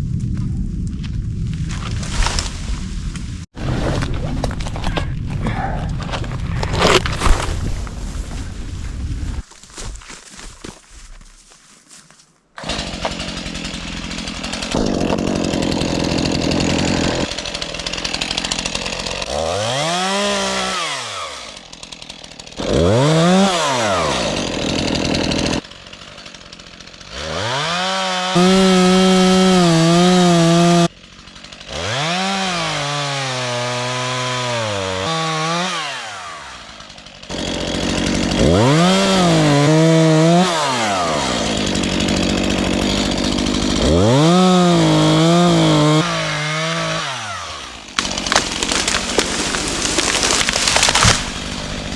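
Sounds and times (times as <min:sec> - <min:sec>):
chainsaw revving: 0:12.6 - 0:51.9.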